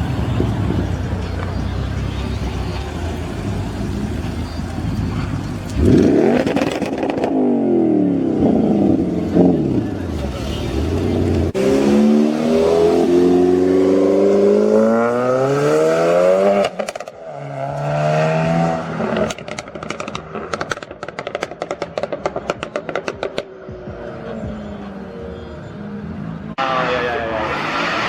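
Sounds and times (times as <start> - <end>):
car engine revving: 0.0 - 23.4, 26.6 - 28.0
exhaust pops and crackles: 19.1 - 23.5.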